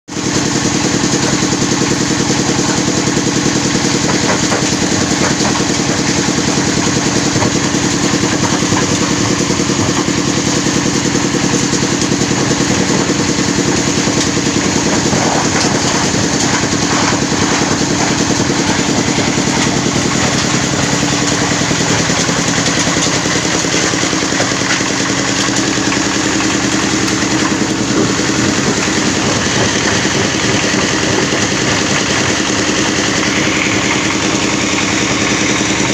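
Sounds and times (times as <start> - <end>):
machine engine droning: 0.1 - 35.9.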